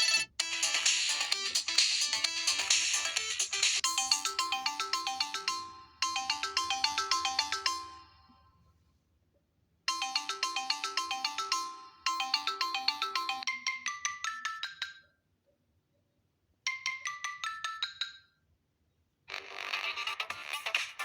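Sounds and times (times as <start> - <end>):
phone ringtone melody: 0.0 - 8.4, 9.9 - 14.1.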